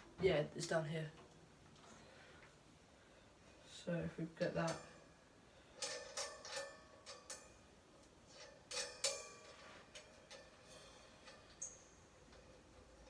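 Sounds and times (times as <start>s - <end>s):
cymbal clinking against metal stand: 4.6s - 13.0s.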